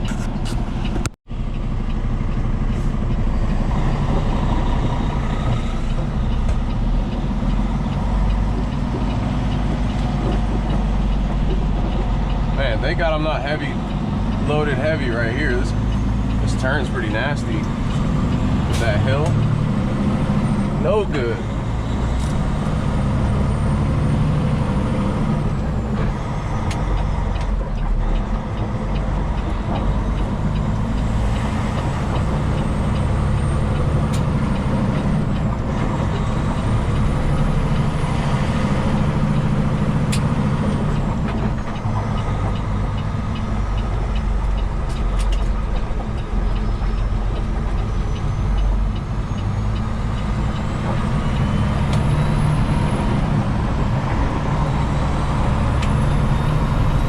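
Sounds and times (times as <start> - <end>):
diesel truck engine running: 0.0 - 57.0
faint regular ticking: 39.0 - 56.3.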